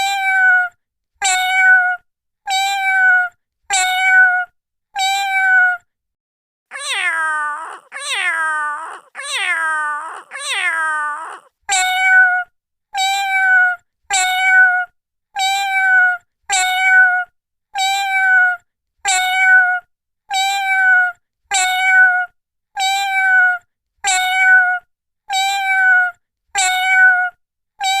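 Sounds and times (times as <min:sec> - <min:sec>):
cat meowing: 0:00.0 - 0:05.8, 0:06.7 - 0:28.0.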